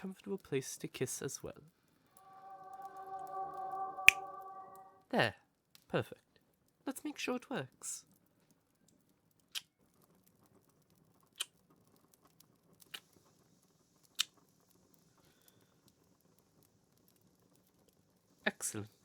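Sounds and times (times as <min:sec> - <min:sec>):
campfire crackle: 0:08.1 - 0:18.4.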